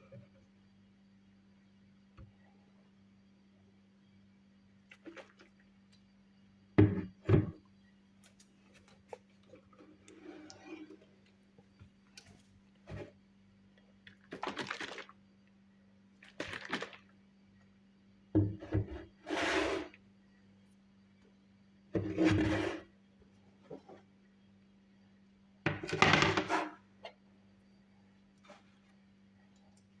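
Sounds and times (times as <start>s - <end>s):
faint steady hum: 0.0s - 30.0s
short scraping noises: 18.9s - 20.0s, 22.1s - 22.9s.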